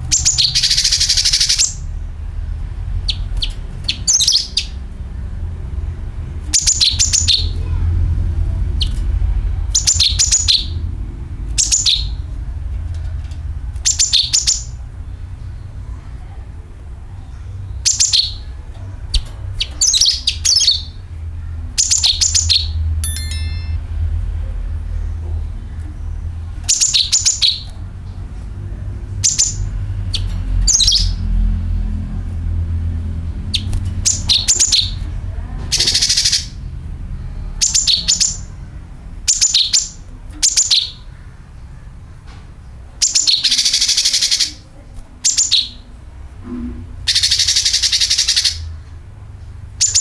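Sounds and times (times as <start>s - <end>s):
steady low hum: 0.0s - 35.8s
bird rapid sharp chirps: 0.1s - 1.9s, 3.1s - 4.8s, 6.5s - 7.6s, 9.7s - 10.8s, 11.6s - 12.3s, 13.8s - 14.8s, 17.8s - 18.5s, 19.1s - 21.0s, 33.5s - 35.0s, 35.7s - 36.6s, 43.0s - 44.6s, 47.1s - 48.7s.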